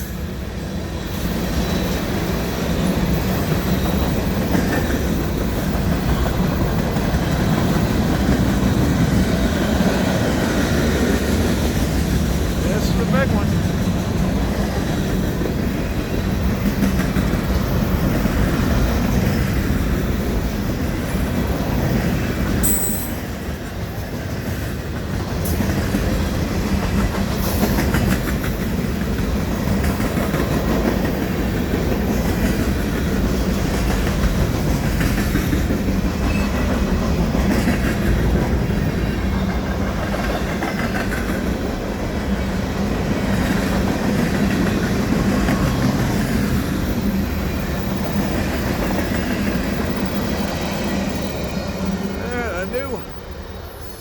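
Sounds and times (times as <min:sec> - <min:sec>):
train wheels rumbling on rail: 0:00.0 - 0:54.0
wheels clacking over rail joints: 0:13.4 - 0:50.5.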